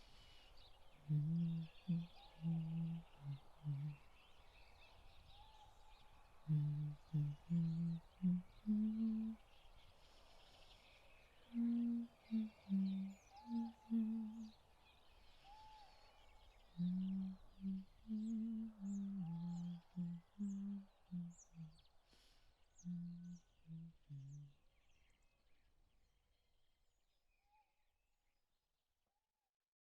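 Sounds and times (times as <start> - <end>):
small birds chirping: 0.0 - 25.5
woman humming a lullaby: 1.1 - 4.0, 6.5 - 9.4, 11.6 - 14.5, 16.8 - 21.7, 22.9 - 24.5.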